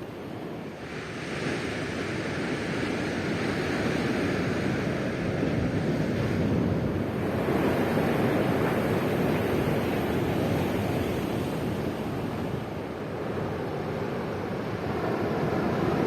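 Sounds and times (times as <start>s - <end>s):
ocean surf breaking on shore: 0.0s - 16.0s.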